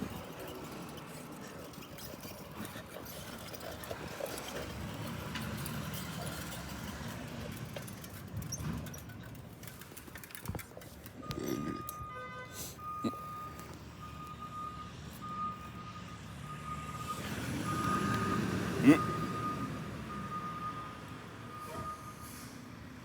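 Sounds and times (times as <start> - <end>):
garbage truck engine running: 0.0 - 11.7
truck reversing beeper: 11.1 - 23.0.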